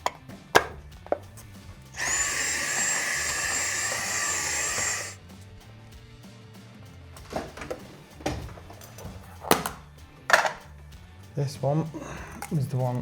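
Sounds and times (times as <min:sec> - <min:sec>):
cordless drill whine: 0:02.0 - 0:05.2.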